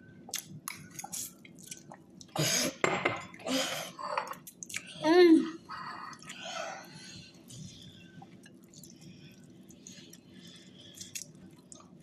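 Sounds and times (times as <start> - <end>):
people chewing: 6.0 - 12.0.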